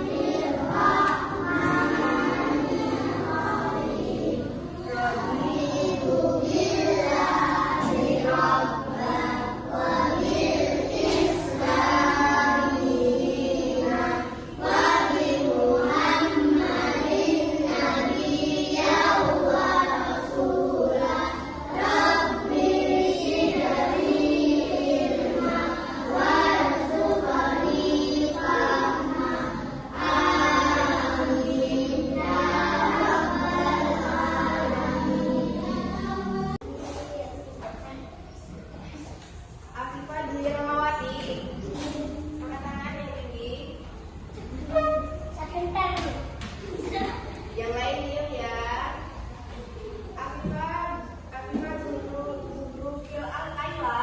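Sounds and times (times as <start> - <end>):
group of voices singing: 0.0 - 36.6.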